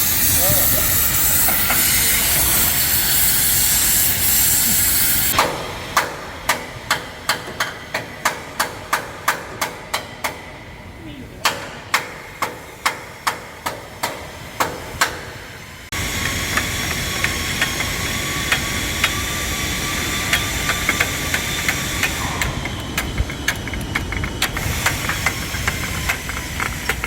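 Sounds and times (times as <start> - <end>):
hammer blows on metal: 0.0 - 10.8
workshop machine hissing: 0.0 - 27.0.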